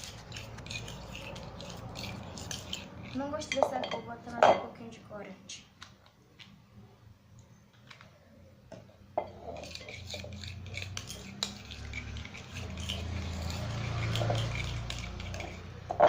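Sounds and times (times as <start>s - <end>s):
utensil stirring slime: 0.0s - 4.4s, 9.3s - 15.8s.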